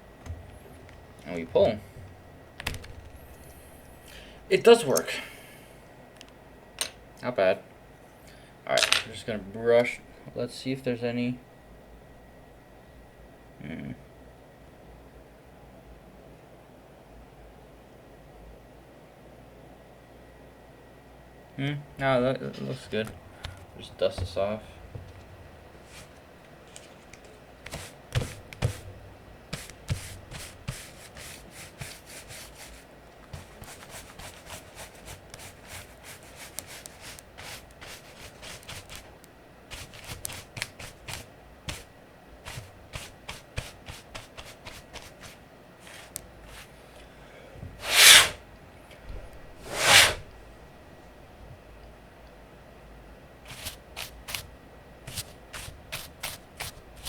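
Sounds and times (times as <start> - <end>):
brush scrubbing keyboard switches: 25.8 - 28.8, 29.6 - 39.1, 39.7 - 41.9, 55.1 - 56.8
blasts of air: 47.8 - 48.4, 49.6 - 50.3.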